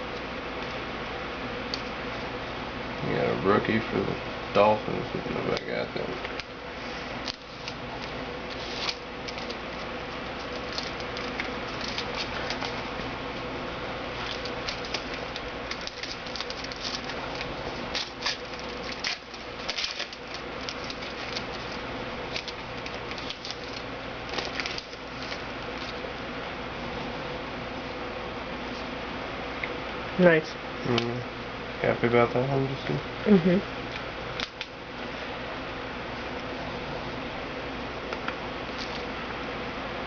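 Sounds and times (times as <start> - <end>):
steady background hiss: 0.0 - 40.0
trading cards rustling: 7.2 - 13.1, 14.1 - 26.0, 38.7 - 39.1.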